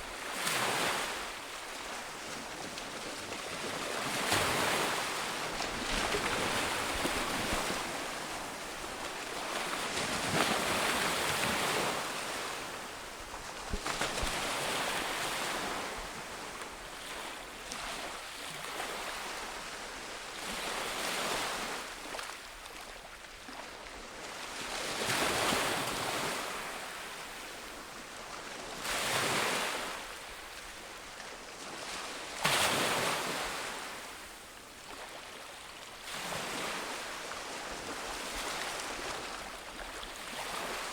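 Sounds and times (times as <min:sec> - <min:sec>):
ocean waves breaking on beach: 0:00.0 - 0:19.6, 0:31.7 - 0:40.9.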